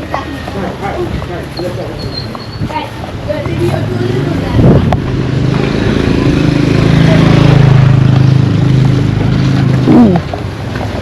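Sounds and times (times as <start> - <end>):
vehicle engine passing by: 3.6 - 11.0.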